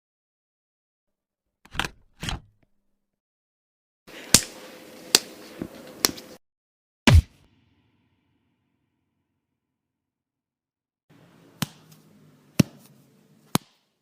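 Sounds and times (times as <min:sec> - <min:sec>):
punch sound effects: 0:07.1 - 0:07.5.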